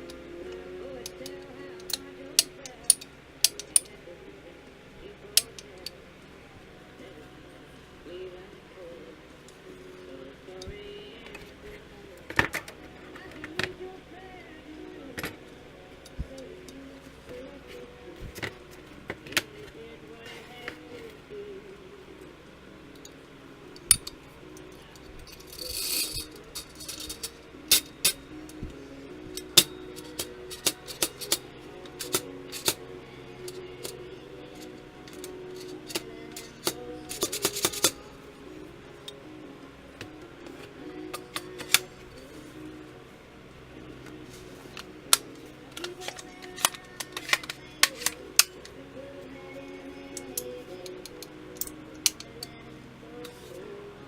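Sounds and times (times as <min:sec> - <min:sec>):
quiet background music: 0:00.0 - 0:54.0
metallic clicks of rifle parts: 0:34.6 - 0:38.1, 0:44.8 - 0:48.6, 0:50.2 - 0:52.5.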